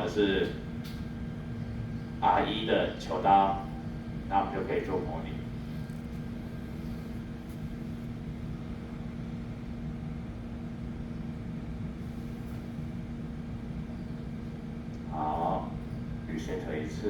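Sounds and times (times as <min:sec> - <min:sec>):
machine hum: 0:00.0 - 0:09.8.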